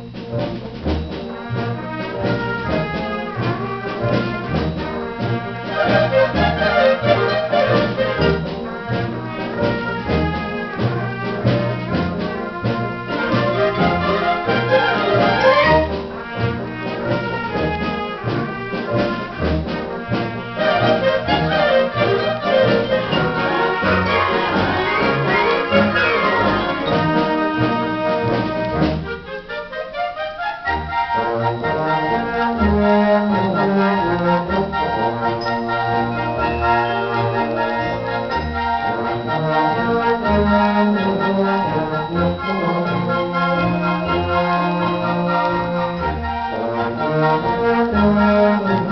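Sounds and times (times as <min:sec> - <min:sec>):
concert band playing: 0:00.0 - 0:48.9
trombones and trumpets: 0:00.0 - 0:48.9.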